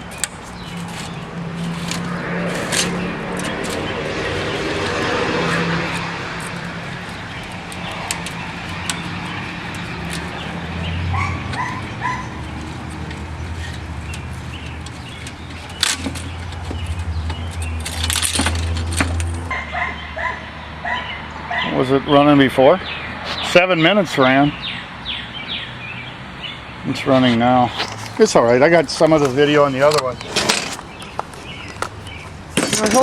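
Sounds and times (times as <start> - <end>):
sharp clicks and knocks: 0.0 - 19.5, 28.9 - 33.0
dog yipping: 11.1 - 12.4.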